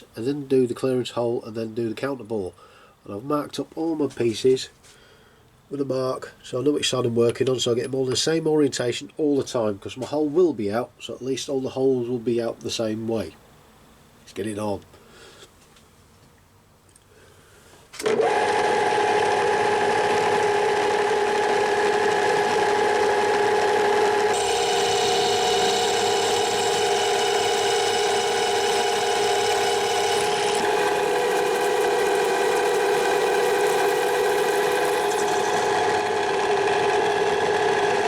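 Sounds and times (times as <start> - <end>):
milling machine geared whine: 18.0 - 38.0.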